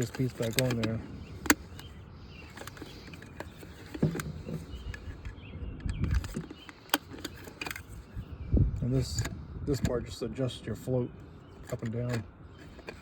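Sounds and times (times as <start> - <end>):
plastic parts clicking and knocking: 0.0 - 8.0, 11.6 - 13.0.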